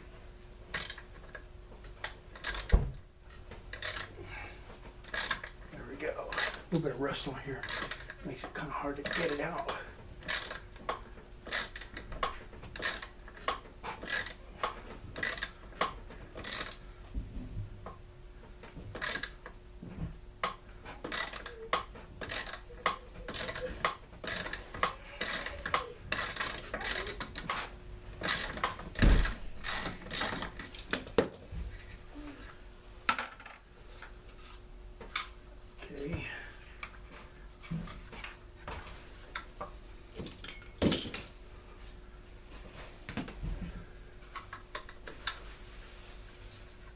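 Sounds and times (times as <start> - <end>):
hand tools clicking on metal: 7.6 - 16.8, 20.4 - 27.6.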